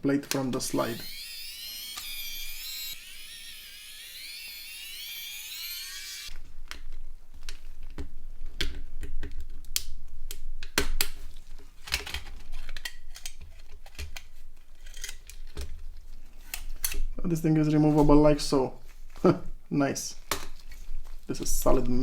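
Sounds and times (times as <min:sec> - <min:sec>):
electric screwdriver whining: 0:00.7 - 0:06.3.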